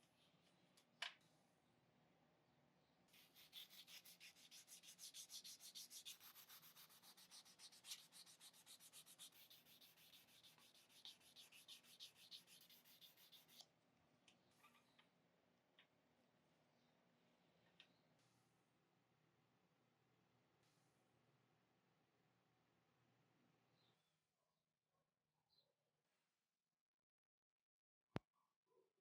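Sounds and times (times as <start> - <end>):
sandpaper rubbing: 3.1 - 13.6.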